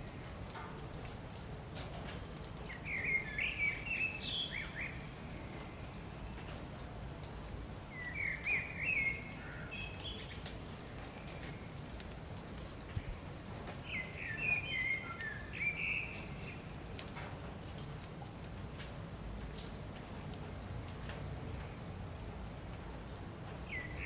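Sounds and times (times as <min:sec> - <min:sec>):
steady rain pattering: 0:00.0 - 0:24.0
songbird chirping: 0:02.6 - 0:06.6, 0:07.5 - 0:12.1, 0:12.8 - 0:16.8, 0:23.0 - 0:24.0.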